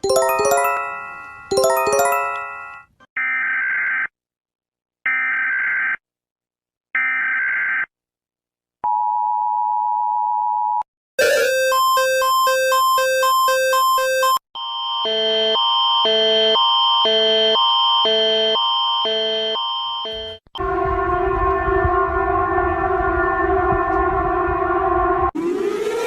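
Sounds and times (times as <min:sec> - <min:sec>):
chime chord: 0:00.0 - 0:02.9.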